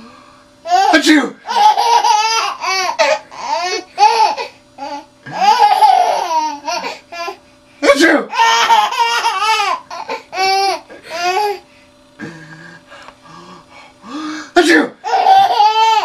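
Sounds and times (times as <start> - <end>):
baby giggling: 1.5 - 7.0, 8.3 - 11.6, 15.0 - 16.0.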